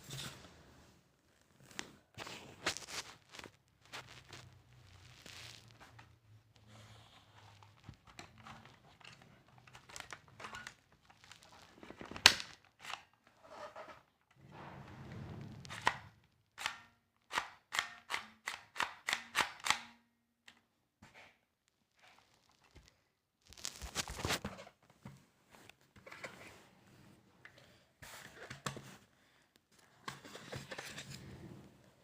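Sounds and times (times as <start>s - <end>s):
gun handling clicks and rustles: 7.8s - 13.3s, 16.6s - 20.6s.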